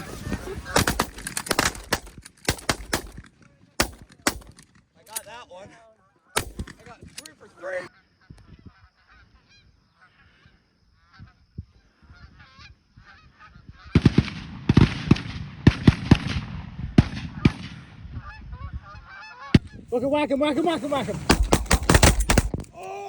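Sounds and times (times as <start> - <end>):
geese honking and clucking: 0.0 - 1.7, 6.0 - 14.0, 18.2 - 21.3.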